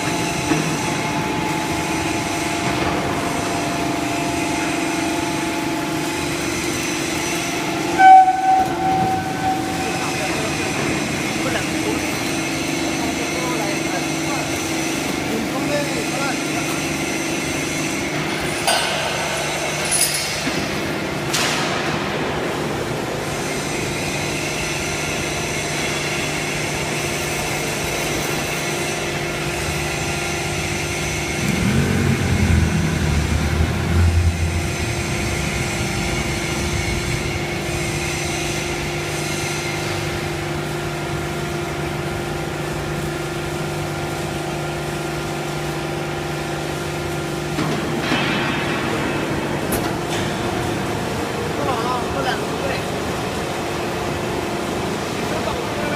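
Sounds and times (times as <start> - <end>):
baling machine motor hum: 0.0 - 18.3, 26.4 - 42.5
loud low rumble: 7.4 - 12.2, 31.1 - 39.0.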